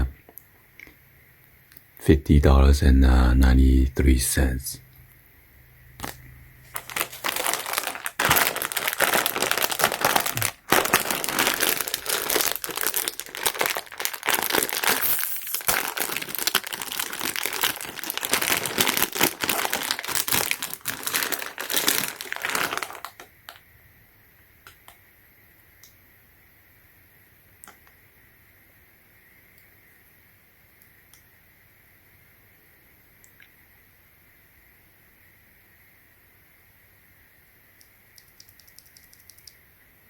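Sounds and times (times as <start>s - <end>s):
plastic packaging crinkling: 6.0s - 23.6s.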